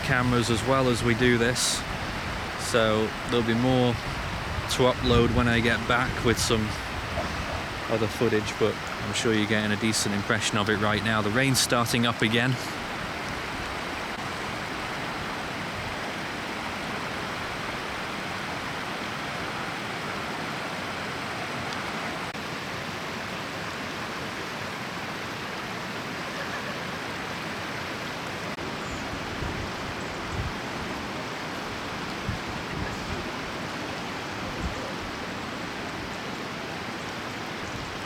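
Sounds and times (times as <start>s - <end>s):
rain falling: 0.0s - 38.0s
river rushing: 0.0s - 38.0s
bumps on microphone: 6.2s - 7.9s.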